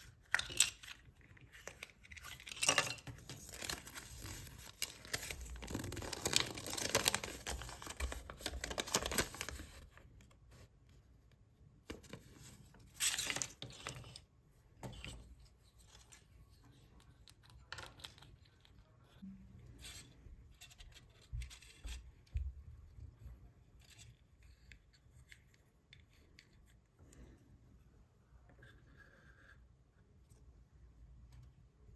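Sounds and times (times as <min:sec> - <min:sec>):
foil wrapper tearing and crinkling: 0:03.5 - 0:09.6.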